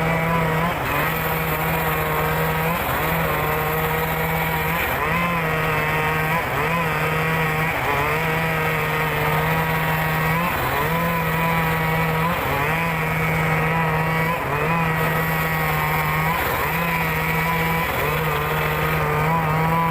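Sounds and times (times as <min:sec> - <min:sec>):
circular sawmill cutting timber: 0:00.0 - 0:19.9.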